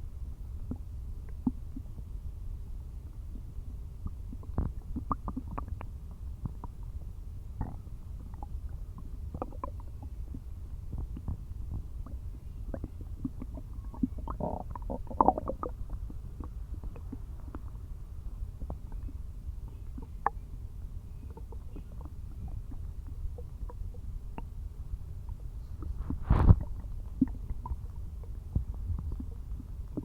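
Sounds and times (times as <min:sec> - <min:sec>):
stomach growling and gurgling: 0:00.5 - 0:02.2, 0:03.0 - 0:30.0.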